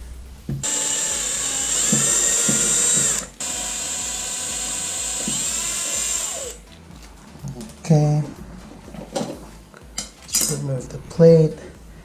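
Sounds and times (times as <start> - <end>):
cordless power driver whining: 0.6 - 6.6.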